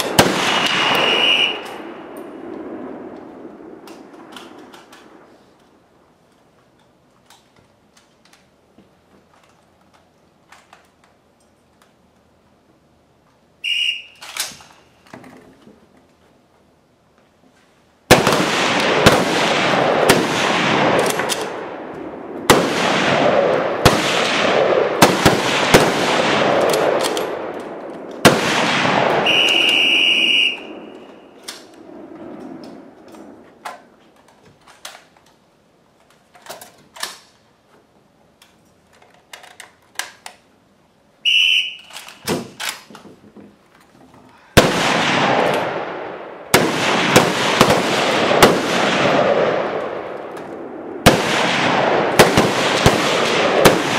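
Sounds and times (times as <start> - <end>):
rifles firing rapid shots: 0.0 - 2.1, 18.1 - 21.9, 22.5 - 30.9, 44.6 - 50.2, 51.0 - 53.9
whistle blast: 0.6 - 1.7, 13.6 - 14.3, 29.2 - 31.3, 41.2 - 42.2.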